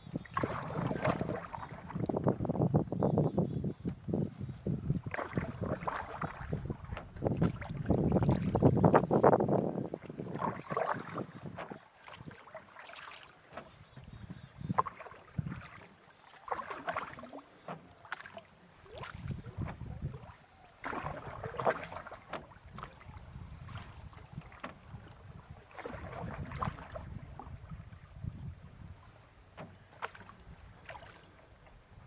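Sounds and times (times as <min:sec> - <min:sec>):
paddle splashing water: 0:00.0 - 0:03.2, 0:04.7 - 0:32.0.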